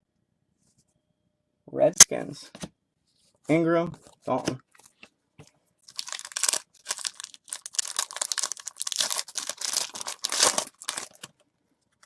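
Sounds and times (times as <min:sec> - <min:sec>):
foil wrapper tearing and crinkling: 0:05.9 - 0:11.3.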